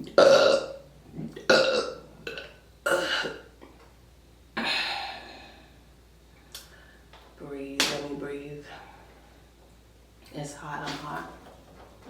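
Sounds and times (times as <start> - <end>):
person burping: 0.0 - 3.6, 4.6 - 5.6.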